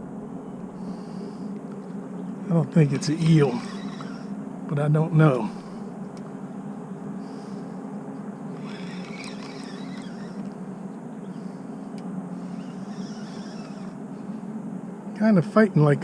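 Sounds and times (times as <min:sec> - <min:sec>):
boat engine drone: 0:00.0 - 0:16.0
faint scraping: 0:02.6 - 0:04.3.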